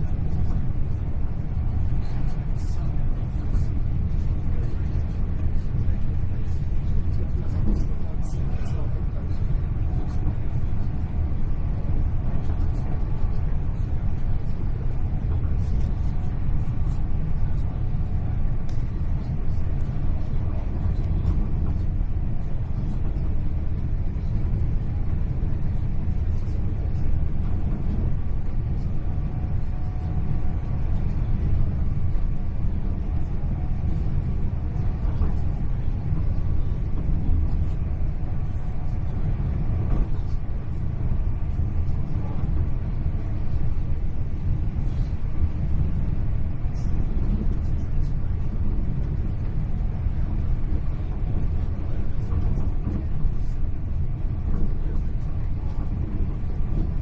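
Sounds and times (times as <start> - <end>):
faint steady whine: 0.0 - 57.0
train wheels rumbling on rails: 0.0 - 57.0.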